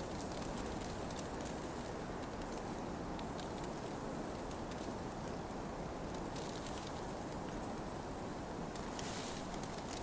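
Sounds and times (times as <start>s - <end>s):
campfire crackling: 0.0s - 8.0s.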